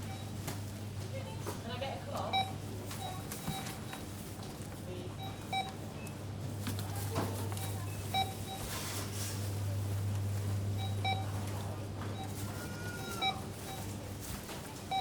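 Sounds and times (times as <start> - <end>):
faint store bustle: 0.0 - 15.0
barcode scanner beeping: 2.2 - 4.1, 7.5 - 8.7, 10.8 - 11.3, 12.2 - 13.9
steady low hum: 3.9 - 12.6.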